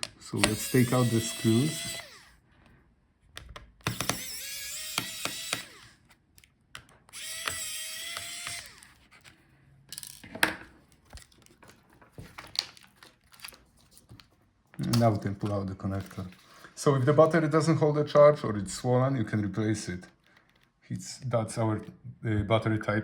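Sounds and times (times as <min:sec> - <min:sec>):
electric screwdriver motor whining: 0:00.4 - 0:02.4, 0:03.8 - 0:06.1, 0:07.1 - 0:09.0.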